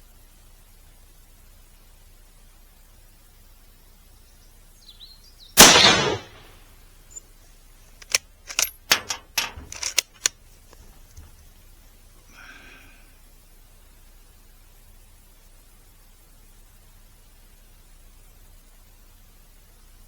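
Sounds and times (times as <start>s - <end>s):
rifle bolt metallic clacks: 5.6s - 6.5s, 8.0s - 10.3s
rifle shot: 5.6s - 6.6s, 8.0s - 10.3s.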